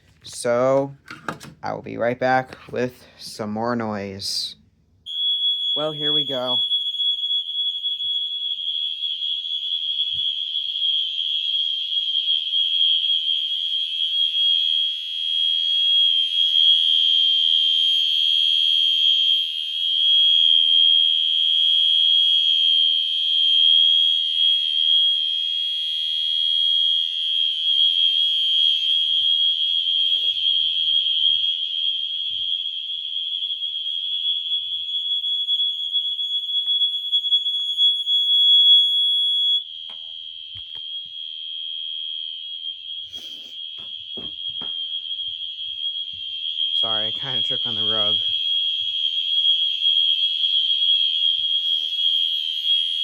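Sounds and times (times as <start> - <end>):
fire alarm horn steady tone: 5.0 - 53.0.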